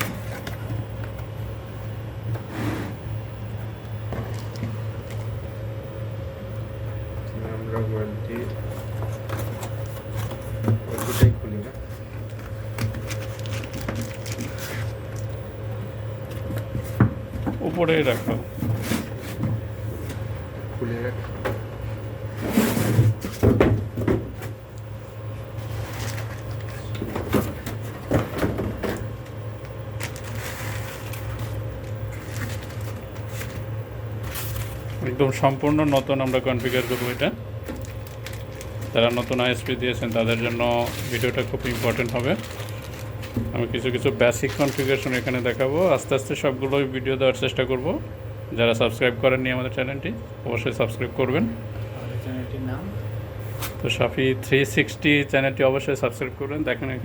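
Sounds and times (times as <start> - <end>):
steady low hum: 0.0 - 57.0
packaging rustle: 8.8 - 15.3, 25.6 - 27.0, 29.6 - 45.9.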